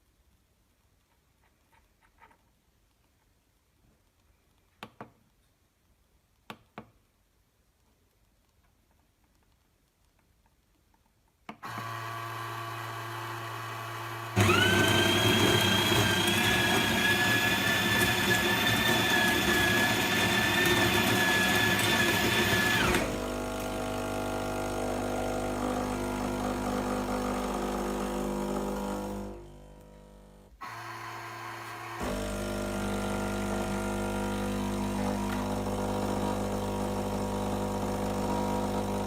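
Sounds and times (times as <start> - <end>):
brewing pump humming: 11.7 - 39.0
coffee grinder grinding: 11.7 - 39.0.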